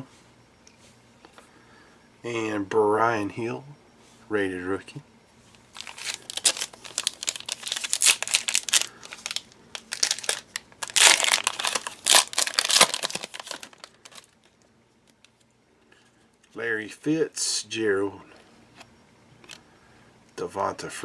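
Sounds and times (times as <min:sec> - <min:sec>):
foil wrapper crinkling: 0:05.6 - 0:15.4.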